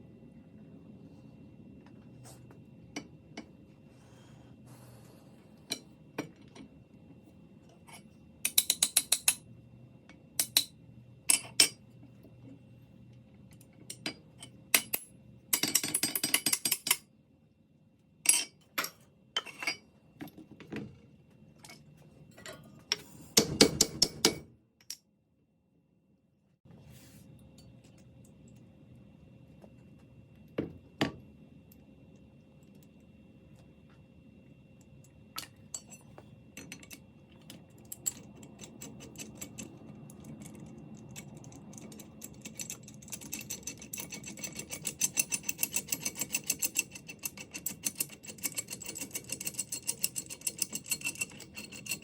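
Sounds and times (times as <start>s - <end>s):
pipe wrench clicking and rattling: 8.4s - 9.4s, 37.9s - 52.0s.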